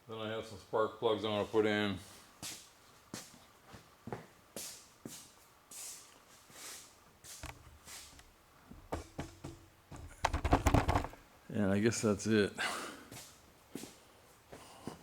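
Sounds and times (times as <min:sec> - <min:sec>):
dull knocks: 0:08.7 - 0:11.2
hands handling small parts: 0:10.0 - 0:11.2.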